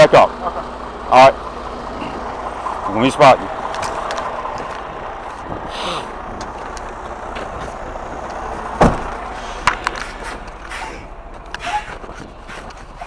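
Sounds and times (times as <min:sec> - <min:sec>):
truck engine running: 0:00.0 - 0:13.0
air brake hiss: 0:10.2 - 0:12.0.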